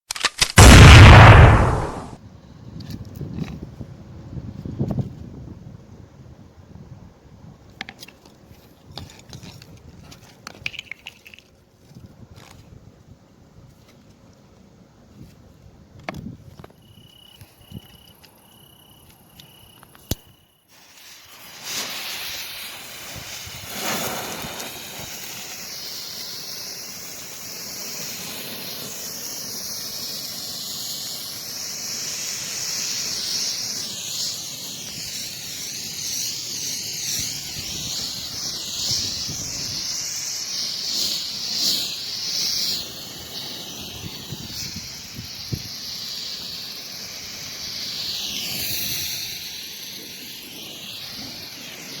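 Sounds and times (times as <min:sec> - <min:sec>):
sharp click: 0:00.0 - 0:02.2, 0:19.1 - 0:20.3
flare burning with wavering hiss: 0:00.6 - 0:02.2, 0:20.1 - 0:52.0.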